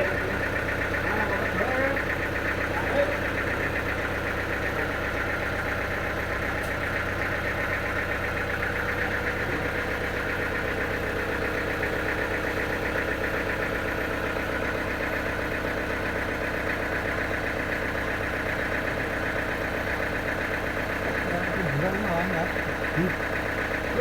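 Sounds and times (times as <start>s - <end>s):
engine idling: 0.0s - 24.0s.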